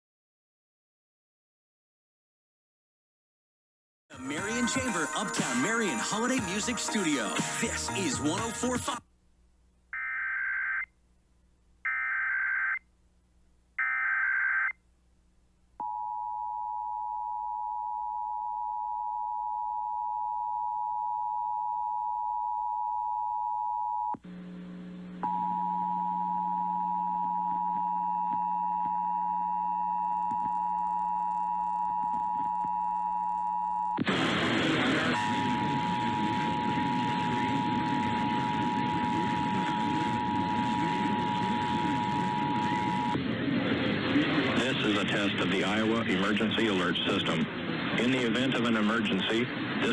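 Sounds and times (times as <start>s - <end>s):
low hum: 17.1s - 49.9s
loud burst of noise: 34.0s - 49.9s
two-tone attention signal: 34.9s - 43.2s.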